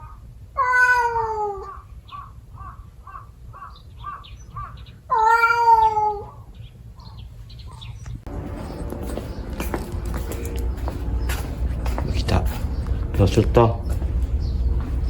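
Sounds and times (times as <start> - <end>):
cat yowling: 0.0 - 6.5.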